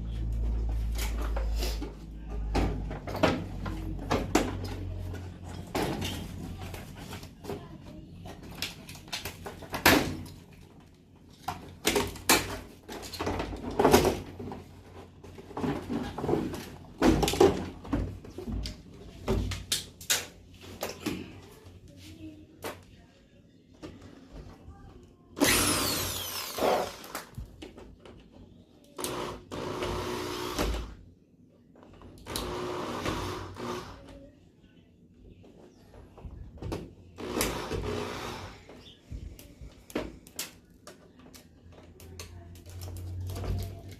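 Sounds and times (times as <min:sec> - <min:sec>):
metal and plastic parts clattering: 0:08.2 - 0:18.8
small power tool motor: 0:25.4 - 0:27.2, 0:29.0 - 0:30.7, 0:32.3 - 0:34.0.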